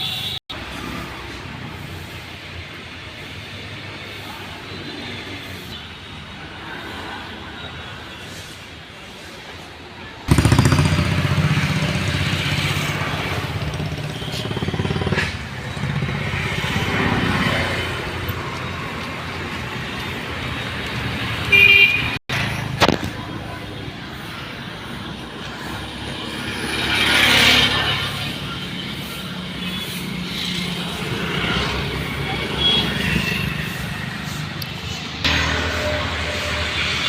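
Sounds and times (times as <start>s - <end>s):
vehicle engines running: 10.2s - 37.0s.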